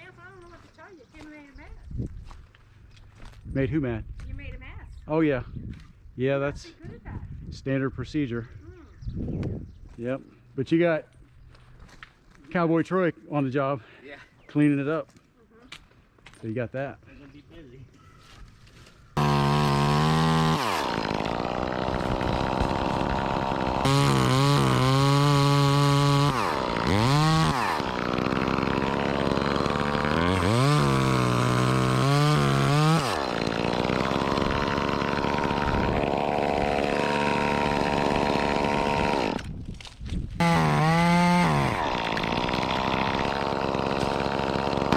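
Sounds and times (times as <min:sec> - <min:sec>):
chainsaw engine revving: 0:19.2 - 0:39.5, 0:40.4 - 0:44.9.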